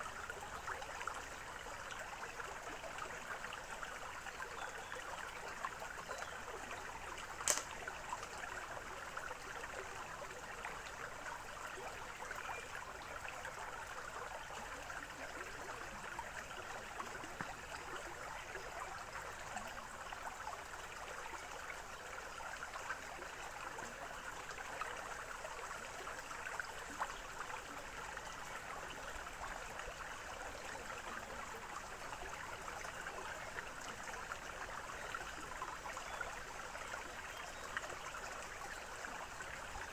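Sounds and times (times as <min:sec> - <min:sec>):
stream trickling: 0:00.0 - 0:39.9
sharp click: 0:07.4 - 0:07.7.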